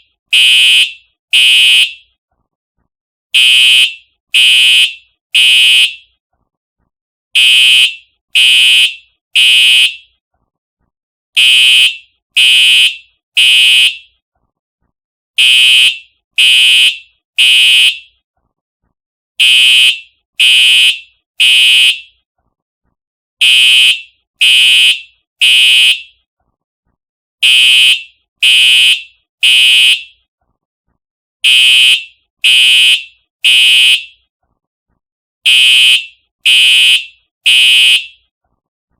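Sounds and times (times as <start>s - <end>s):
fire alarm horn blasts: 0.3s - 2.0s, 3.4s - 6.1s, 7.4s - 10.1s, 11.4s - 14.1s, 15.4s - 18.2s, 19.4s - 22.1s, 23.4s - 26.2s, 27.4s - 30.2s, 31.4s - 34.2s, 35.5s - 38.2s.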